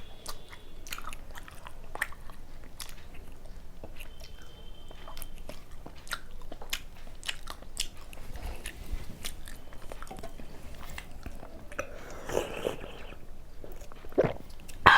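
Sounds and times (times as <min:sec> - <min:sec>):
chewing and biting food: 0:00.1 - 0:14.9
mouth clicks: 0:14.2 - 0:14.9.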